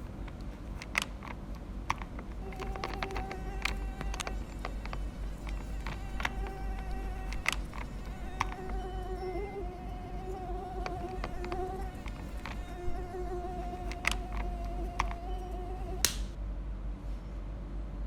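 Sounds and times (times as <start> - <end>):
sharp clicks: 0.0 - 16.4
flying insect buzzing: 2.4 - 16.1.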